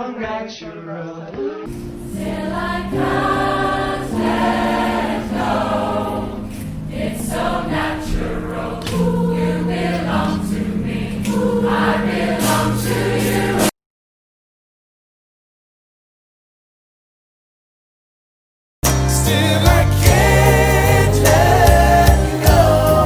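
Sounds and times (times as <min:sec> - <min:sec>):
male vocal group singing in harmony: 0:02.1 - 0:13.7, 0:18.9 - 0:23.0.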